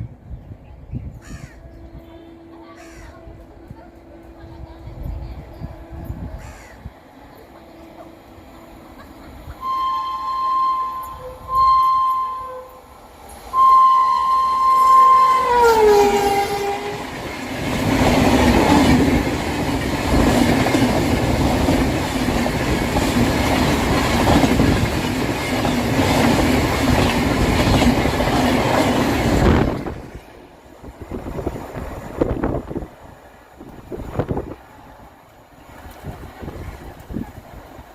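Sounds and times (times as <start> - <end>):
locomotive horn blasts: 1.6 - 2.8, 9.6 - 12.9, 13.5 - 17.1
train coaches rushing: 1.6 - 37.9
wheels clacking over rail joints: 15.0 - 30.5.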